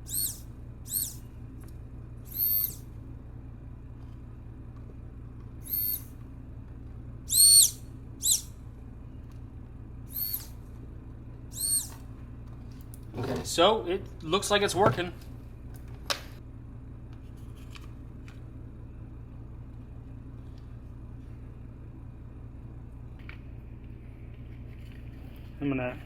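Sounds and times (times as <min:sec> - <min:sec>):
electric fuel pump whining: 0:00.0 - 0:01.4, 0:02.2 - 0:03.0, 0:05.6 - 0:06.2, 0:07.2 - 0:08.5, 0:10.0 - 0:10.7, 0:11.4 - 0:12.1
steady low hum: 0:00.0 - 0:26.0.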